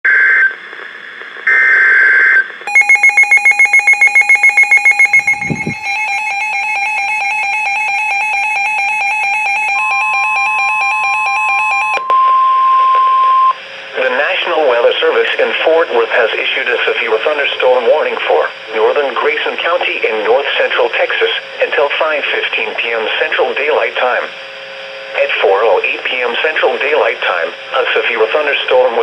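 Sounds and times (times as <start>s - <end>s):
continuous multi-tone alarm: 1.5s - 13.6s
electronic alarm beeping: 1.5s - 13.6s
steady warning tone: 2.7s - 14.1s.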